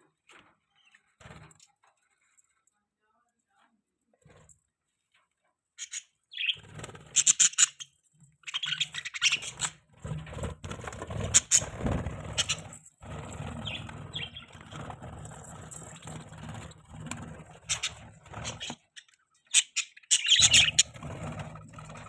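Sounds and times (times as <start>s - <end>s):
budgerigars chirping: 5.8s - 9.8s, 11.3s - 12.7s, 13.6s - 14.6s, 17.7s - 21.0s.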